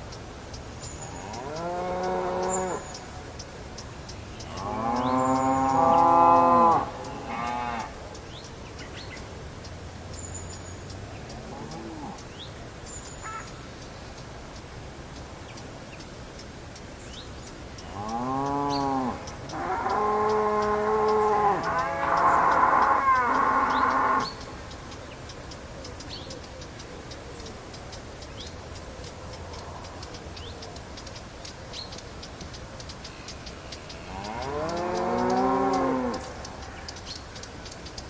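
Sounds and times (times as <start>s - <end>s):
faint even ticking: 0.0s - 38.0s
cattle mooing: 4.5s - 7.9s, 11.4s - 12.2s, 17.9s - 24.3s, 34.0s - 36.3s.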